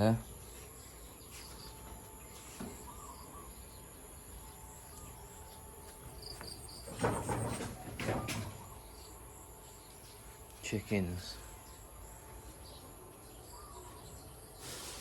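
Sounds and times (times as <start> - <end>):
bird chirps: 0.0 - 14.8
insects: 0.0 - 15.0
brief noisy bursts: 14.6 - 15.0.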